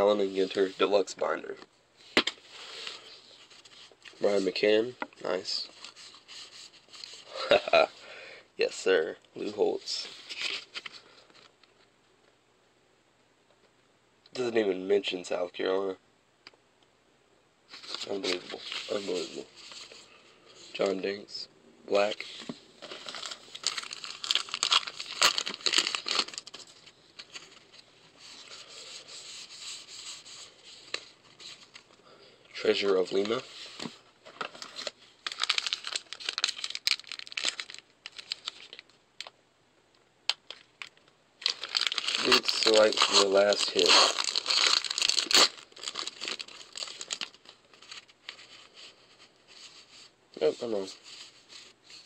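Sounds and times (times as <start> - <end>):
cards rustling and shuffling: 9.4 - 11.5, 17.7 - 20.0, 22.0 - 32.0, 32.7 - 38.9, 40.3 - 52.0
wrapper crinkling: 17.7 - 20.1, 22.0 - 32.0, 33.0 - 39.3, 40.3 - 49.9.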